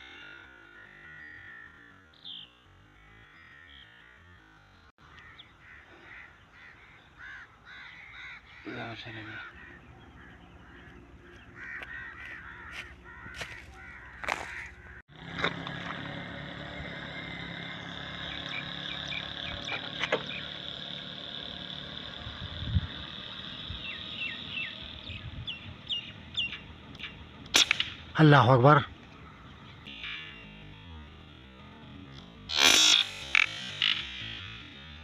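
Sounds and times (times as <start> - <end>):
birds chirping and calling: 0.0 - 35.0
sharp clicks: 26.5 - 28.2.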